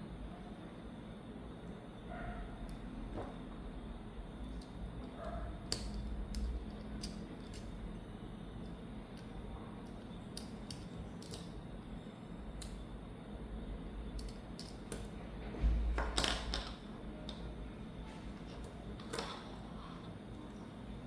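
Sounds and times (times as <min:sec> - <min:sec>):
low steady hum: 0:00.0 - 0:21.0
small metal parts clicking: 0:04.5 - 0:07.8, 0:08.6 - 0:11.6, 0:14.2 - 0:15.0.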